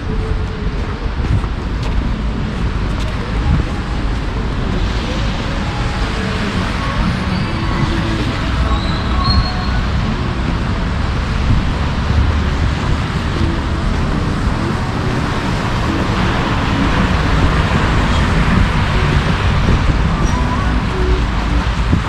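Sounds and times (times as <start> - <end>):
passing cars rumbling: 0.0 - 22.0.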